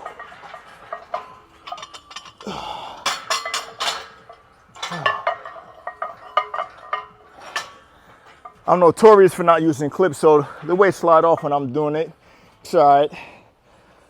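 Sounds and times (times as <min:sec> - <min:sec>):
weight plates clanking: 0:00.0 - 0:08.7.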